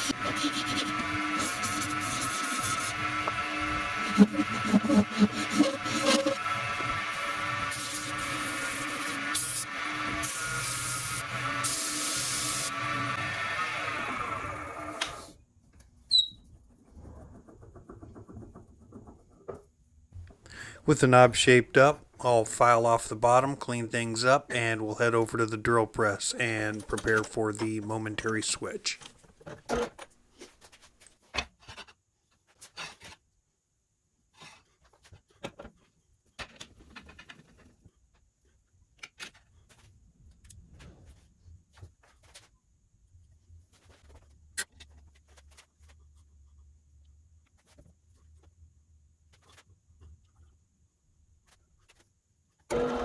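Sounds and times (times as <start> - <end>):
hand filing resin: 0.0 - 13.2
lathe humming: 0.0 - 15.2, 52.7 - 53.0
short high squeak: 16.1 - 16.5.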